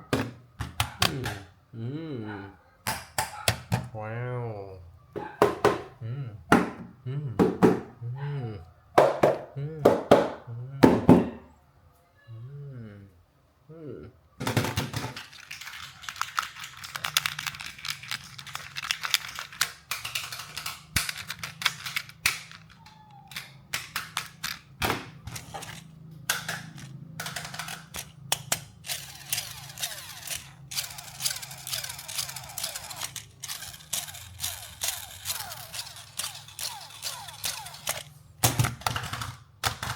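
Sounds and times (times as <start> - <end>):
faint low hum: 3.8 - 15.0
plastic and cardboard crinkling: 15.1 - 22.8
packaging clicks and snaps: 15.2 - 39.9.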